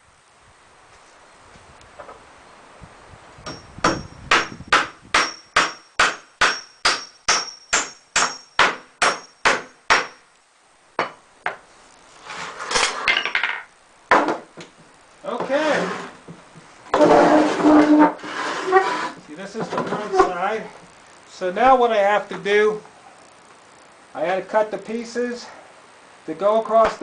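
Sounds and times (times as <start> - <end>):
hammer driving nails: 3.5 - 10.2
scraping noise: 12.1 - 13.1, 15.3 - 16.2, 16.9 - 20.8.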